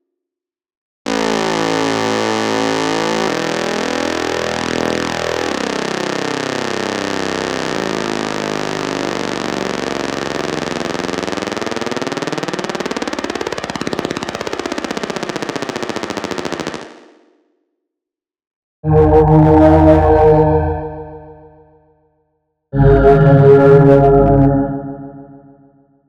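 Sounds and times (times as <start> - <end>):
harsh buzzing rattle: 7.4 - 17.0.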